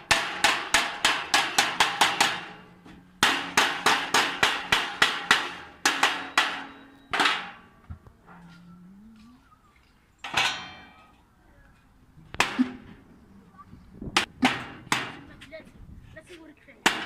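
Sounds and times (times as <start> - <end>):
hammer striking steel: 0.0 - 7.7.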